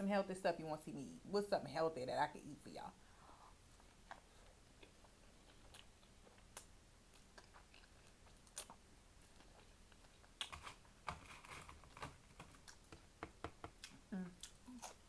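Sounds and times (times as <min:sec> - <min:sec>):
chewing food: 0:03.7 - 0:11.0.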